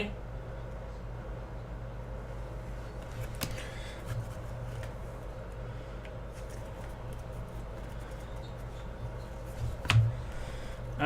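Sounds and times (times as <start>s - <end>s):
steady low hum: 0.0s - 11.0s
trading cards rustling and clicking: 3.0s - 5.0s, 6.3s - 8.7s.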